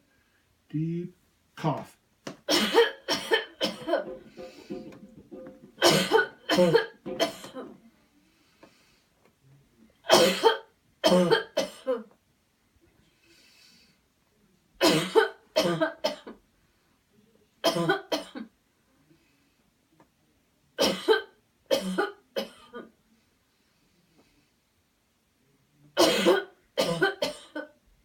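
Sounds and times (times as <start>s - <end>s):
person coughing forcefully: 2.5s - 7.8s, 10.1s - 12.0s, 14.8s - 16.3s, 17.6s - 18.4s, 20.8s - 22.8s, 26.0s - 27.6s
faint breath drawn in: 13.0s - 14.1s.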